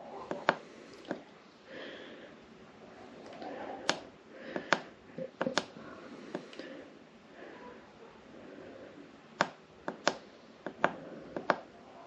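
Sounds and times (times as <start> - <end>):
breathing: 0.5 - 2.4, 3.3 - 5.0, 5.8 - 9.2, 10.4 - 11.5.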